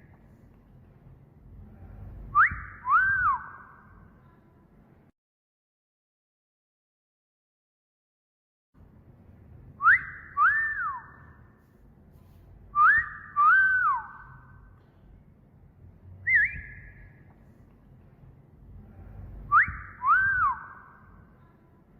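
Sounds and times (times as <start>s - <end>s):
wavering whistle: 2.2s - 3.9s, 9.8s - 11.4s, 12.7s - 14.6s, 16.2s - 17.2s, 19.5s - 21.2s
wolf whistle: 2.3s - 3.8s, 9.8s - 11.4s, 12.7s - 14.5s, 16.2s - 17.2s, 19.5s - 21.1s.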